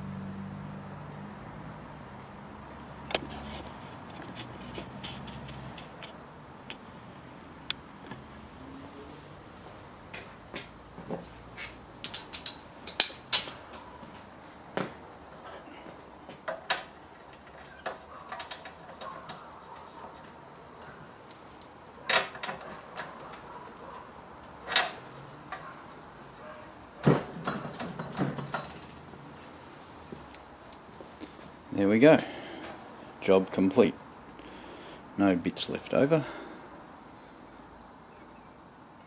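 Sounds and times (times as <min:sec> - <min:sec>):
hand tools clinking on metal: 0:12.0 - 0:13.5, 0:16.4 - 0:24.0.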